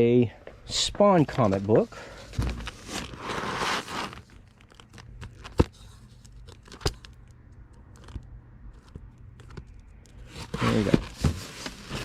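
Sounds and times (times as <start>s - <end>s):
packing material crinkling: 2.4s - 6.8s, 9.6s - 12.0s.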